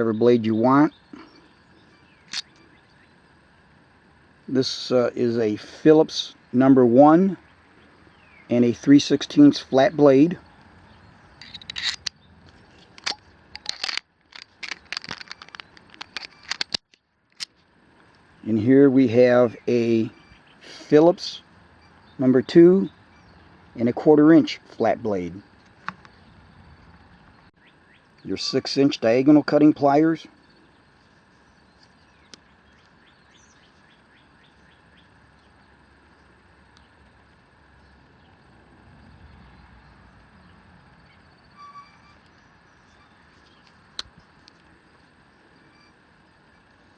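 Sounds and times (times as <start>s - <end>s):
small bird chirping: 0.0s - 3.2s, 19.4s - 20.8s, 21.4s - 23.7s, 25.4s - 28.6s, 30.3s - 37.0s, 39.1s - 46.8s
sharp click: 2.3s - 2.6s, 11.4s - 12.2s, 43.6s - 44.6s
screwdriver bits clicking and clattering: 11.4s - 12.1s, 13.0s - 16.8s.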